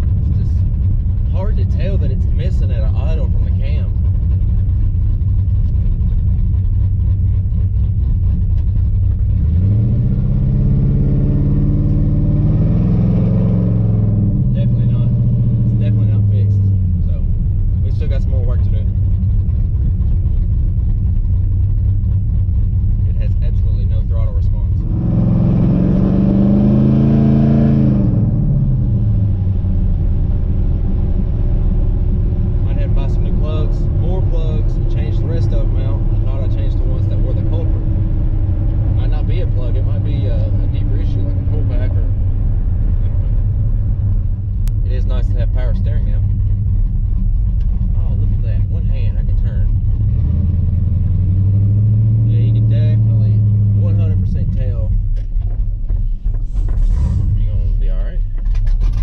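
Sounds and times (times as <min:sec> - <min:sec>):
misfiring engine running: 0:00.0 - 0:59.0.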